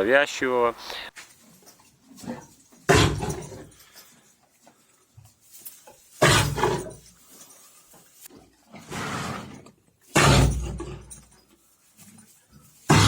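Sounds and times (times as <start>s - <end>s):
horse coughing: 2.9s - 3.7s, 6.2s - 6.9s.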